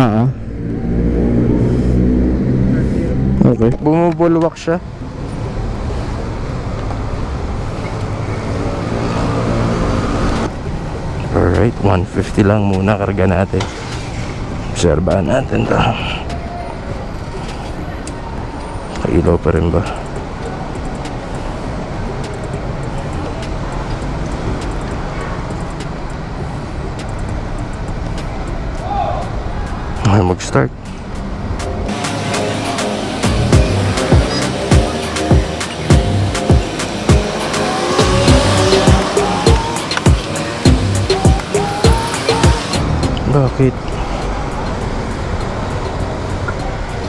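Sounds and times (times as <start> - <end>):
road traffic rumble: 0.0 - 47.0
fuel gushing from pump nozzle: 31.9 - 42.8
fuel pump humming: 31.9 - 43.2.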